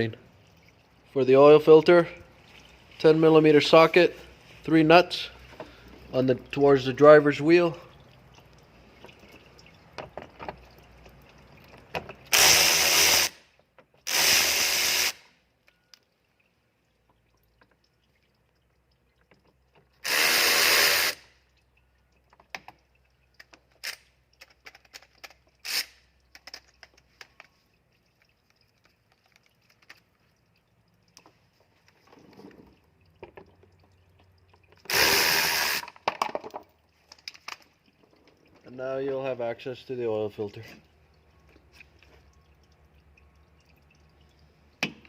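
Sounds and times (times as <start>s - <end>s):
power tool whirring: 12.3s - 13.4s, 14.1s - 15.2s, 20.0s - 21.2s, 34.9s - 35.9s.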